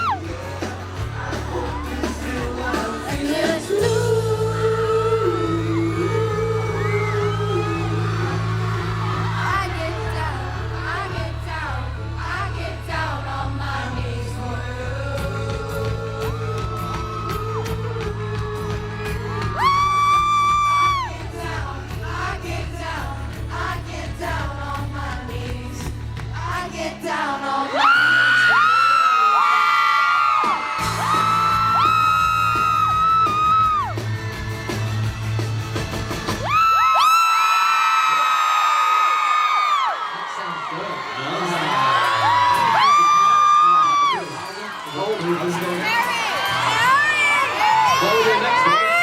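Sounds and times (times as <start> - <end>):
crowd screaming: 0.0 - 12.6, 14.6 - 23.0, 26.4 - 49.0
amplified backing music: 0.0 - 28.6, 30.3 - 36.9
person singing pop vocals: 0.0 - 33.8.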